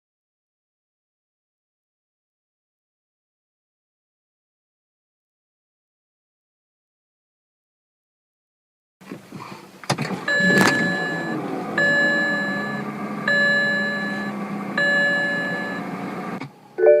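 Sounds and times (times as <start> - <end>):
car warning chime: 10.3 - 16.0, 16.7 - 17.0.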